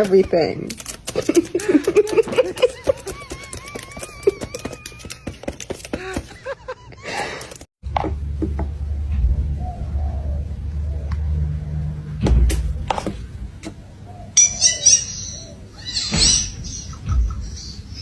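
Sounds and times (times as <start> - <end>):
beak clicking and crunching: 0.0 - 6.5
scattered taps: 0.0 - 6.6.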